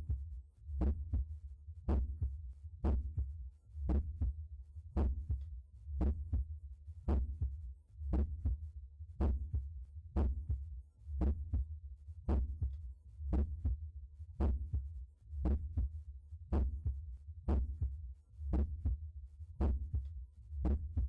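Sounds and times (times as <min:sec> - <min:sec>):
heartbeat through stethoscope: 0:00.8 - 0:01.3, 0:01.9 - 0:04.4, 0:05.0 - 0:06.5, 0:07.1 - 0:08.6, 0:09.2 - 0:11.7, 0:12.3 - 0:13.8, 0:14.4 - 0:19.0, 0:19.6 - 0:21.0.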